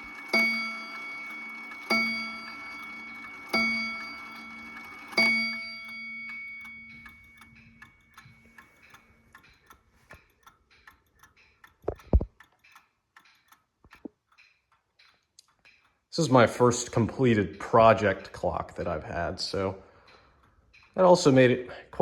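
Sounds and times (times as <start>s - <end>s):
clock striking bell: 0.0s - 8.2s
clock ticking: 0.0s - 22.0s.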